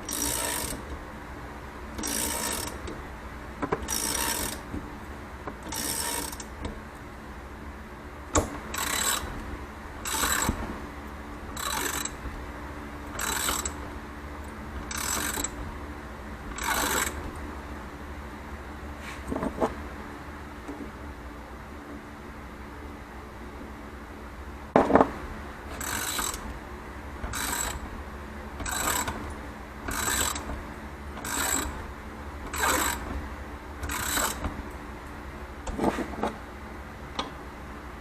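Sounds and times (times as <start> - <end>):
ratchet wrench clicking: 0.1 - 0.8, 2.0 - 2.8, 3.9 - 4.6, 5.7 - 6.5, 8.8 - 9.2, 10.0 - 10.5, 11.6 - 12.2, 13.2 - 13.8, 14.8 - 15.6, 16.6 - 17.2, 25.8 - 26.4, 27.3 - 27.8, 28.6 - 29.2, 29.9 - 30.5, 31.2 - 31.7, 32.5 - 33.0, 33.8 - 34.4.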